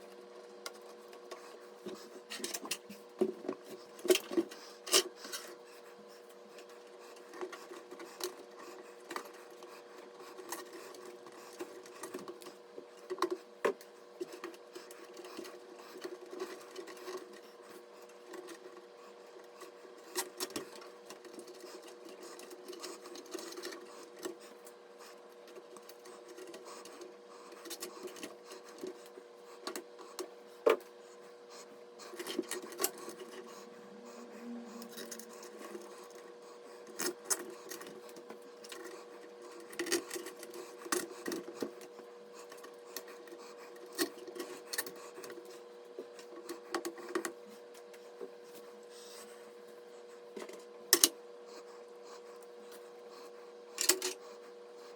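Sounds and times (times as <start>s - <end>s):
steady hum: 25.8s - 45.6s.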